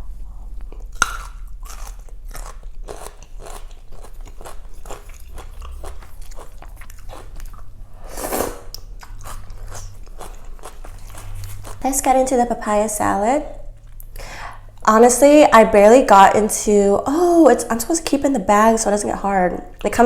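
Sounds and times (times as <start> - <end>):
person chewing and eating: 0.0 - 12.1.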